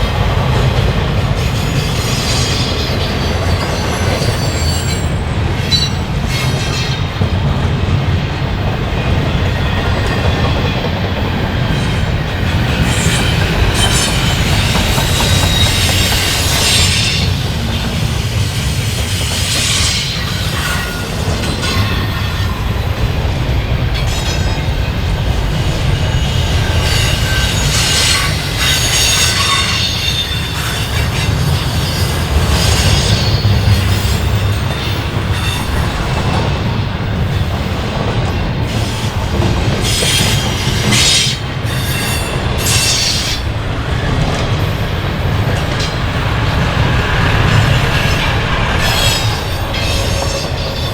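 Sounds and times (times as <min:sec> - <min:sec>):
train wheels rumbling on rails: 0:00.0 - 0:50.9
train wheels squealing: 0:01.3 - 0:07.3, 0:08.9 - 0:50.9.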